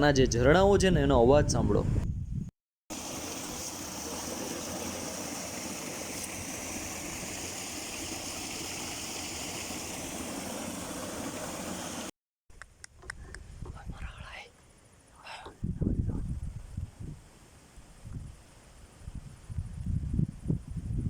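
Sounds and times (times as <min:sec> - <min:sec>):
forest stream flowing: 0:02.9 - 0:12.1.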